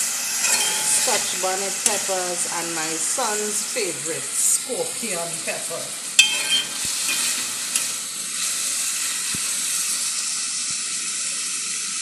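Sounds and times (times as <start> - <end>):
onion sizzling in a pan: 0.0 - 12.0
utensil clinking against pan: 0.4 - 1.4, 6.2 - 7.9.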